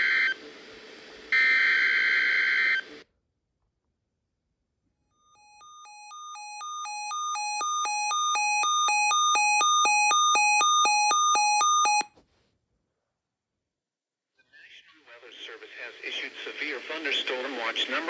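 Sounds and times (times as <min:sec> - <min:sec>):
alternating electronic alarm beeps: 0:05.2 - 0:12.1.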